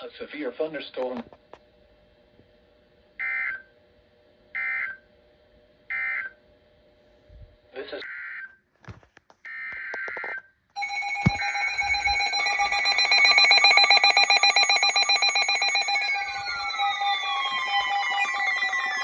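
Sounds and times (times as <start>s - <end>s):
electronic alarm beeping: 10.8s - 19.0s.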